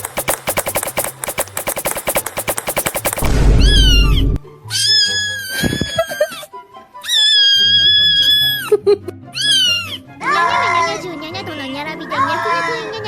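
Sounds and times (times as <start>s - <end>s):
low rumble: 3.2s - 4.4s
background music with low notes: 3.2s - 13.0s
cat yowling: 4.7s - 6.2s, 7.0s - 8.6s, 9.4s - 10.8s.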